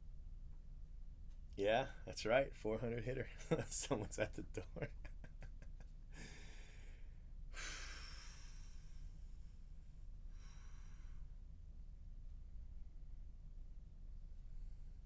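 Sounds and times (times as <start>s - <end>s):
low steady hum: 0.0s - 15.0s
soft breathing: 6.1s - 11.5s.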